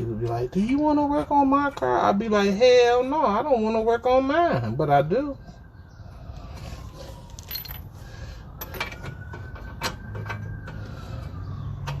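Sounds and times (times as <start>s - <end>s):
metal tools clinking: 7.3s - 7.9s.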